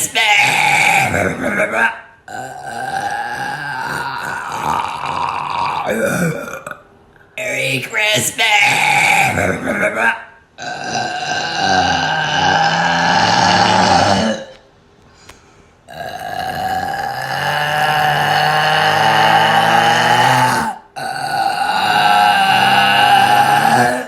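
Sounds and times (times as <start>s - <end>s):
person belching: 0.0s - 7.7s, 8.5s - 14.7s, 15.9s - 24.0s.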